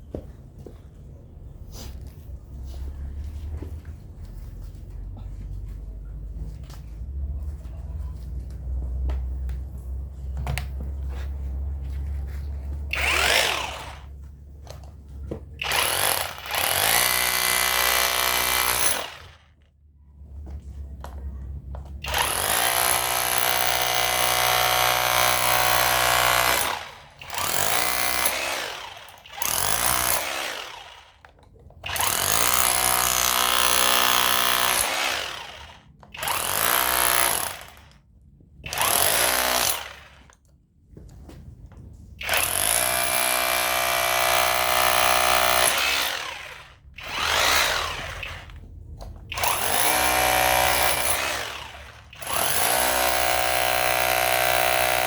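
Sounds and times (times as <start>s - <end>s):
rotary hammer breaking concrete: 12.9s - 14.0s, 15.6s - 19.5s, 22.0s - 31.2s, 31.8s - 38.0s, 38.7s - 40.2s, 42.2s - 48.6s, 49.3s - 55.0s.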